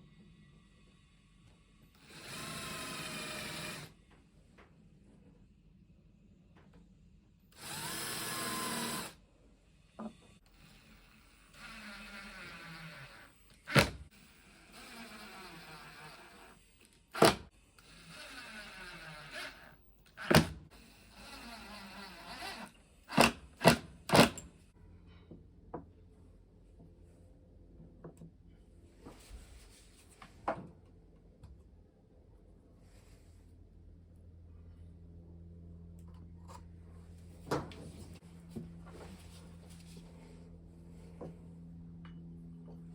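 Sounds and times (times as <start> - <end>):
power drill running: 2.0 - 3.9, 7.5 - 9.2, 10.4 - 24.4.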